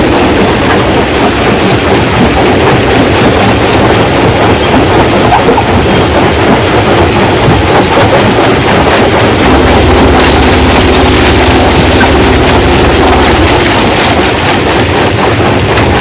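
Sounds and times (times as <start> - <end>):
steady engine hum: 0.0 - 16.0
rock crusher grinding stones: 7.8 - 16.0.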